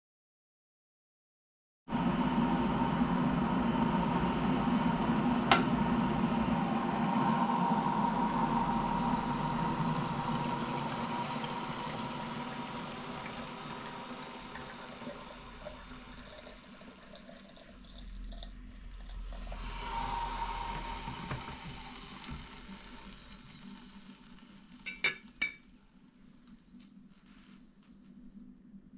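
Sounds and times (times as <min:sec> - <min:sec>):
water rushing: 0:06.2 - 0:18.4.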